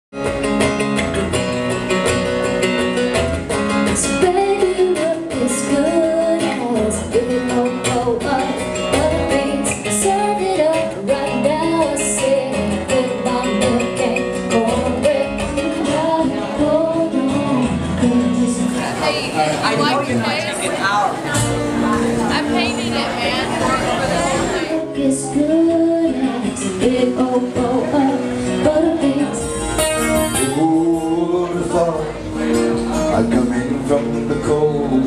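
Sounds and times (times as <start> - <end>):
strummed acoustic guitar: 0.2 - 35.0
person singing: 4.0 - 19.4, 24.3 - 35.0.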